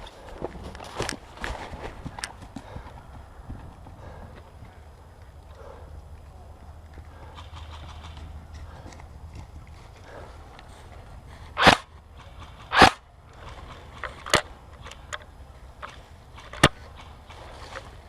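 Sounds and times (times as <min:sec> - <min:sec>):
airsoft gun shots: 0:11.6 - 0:13.0.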